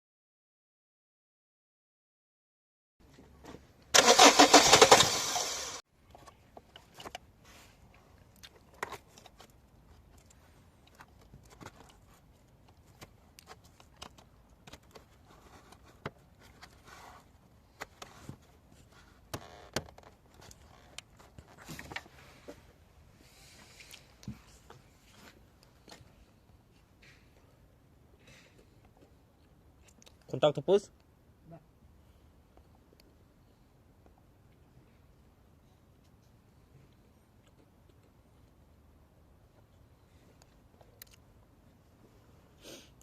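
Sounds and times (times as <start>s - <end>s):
car engine cranking: 3.9s - 5.8s.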